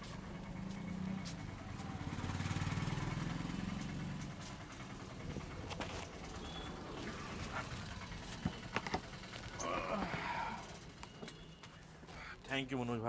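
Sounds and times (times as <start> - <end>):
motorbike passing by: 0.2 - 8.4.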